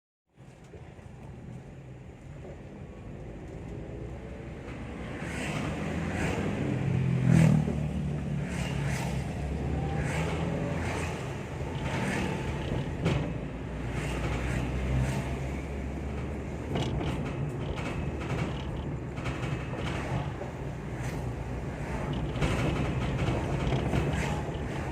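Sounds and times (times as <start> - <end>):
vehicle running hum: 0.4 - 24.9
creaks and clicks: 11.5 - 15.0, 16.0 - 24.9.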